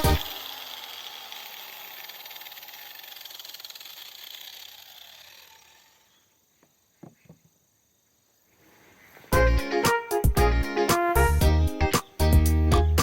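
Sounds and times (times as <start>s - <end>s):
angle grinder winding down: 0.0s - 6.3s.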